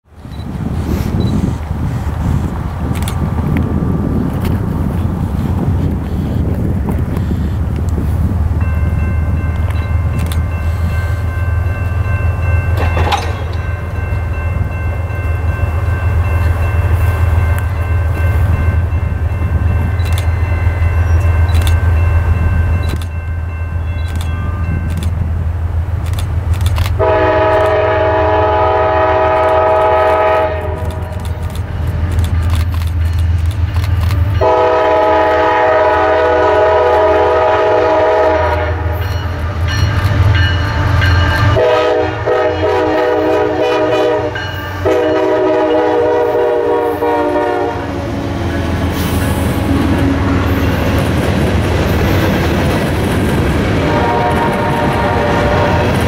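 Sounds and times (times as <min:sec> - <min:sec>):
locomotive engines rumbling: 0:00.0 - 0:56.0
wheels clacking over rails: 0:12.7 - 0:14.0
locomotive air horn blasts: 0:27.0 - 0:31.2, 0:34.2 - 0:50.6, 0:53.8 - 0:56.0.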